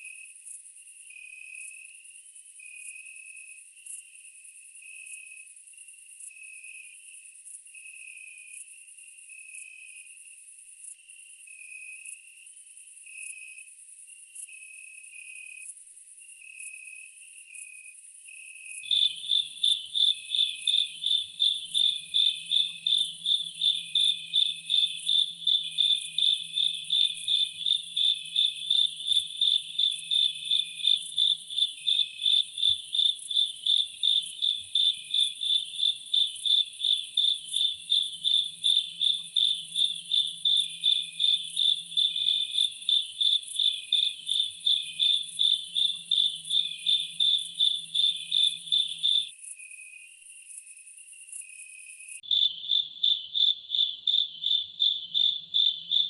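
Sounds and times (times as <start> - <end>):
lower insect chirp: 0.0 - 56.0
insects chirping in a rapid pulse: 13.8 - 56.0.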